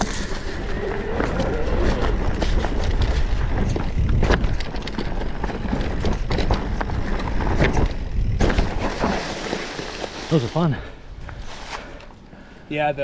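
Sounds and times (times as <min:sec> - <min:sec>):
wind rumble on microphone: 0:00.0 - 0:10.3
bike knocks and rattles: 0:00.0 - 0:10.9.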